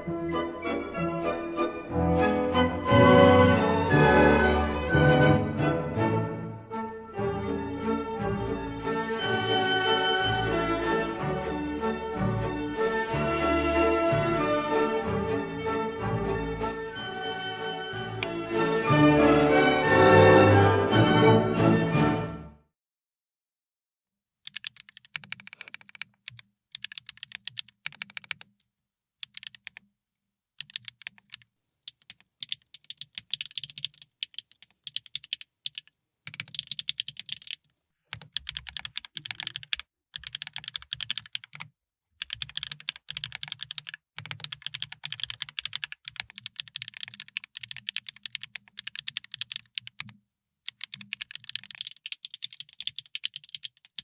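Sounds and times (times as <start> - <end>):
mechanical keyboard typing: 24.4 - 28.6, 29.2 - 29.8, 30.6 - 54.0.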